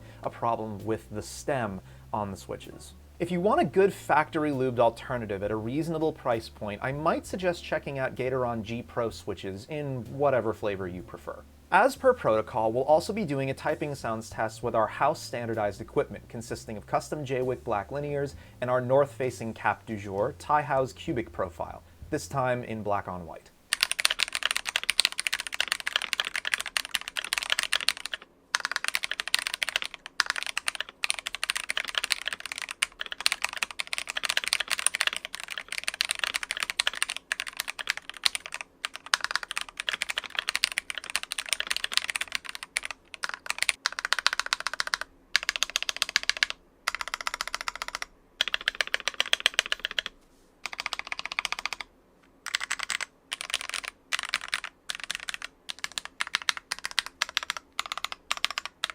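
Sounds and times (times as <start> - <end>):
mechanical keyboard typing: 23.7 - 58.9.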